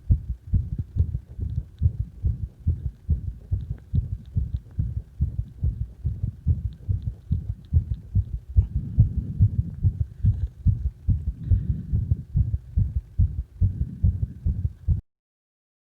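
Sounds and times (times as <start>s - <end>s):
fast heartbeat thumps: 0.0s - 15.0s.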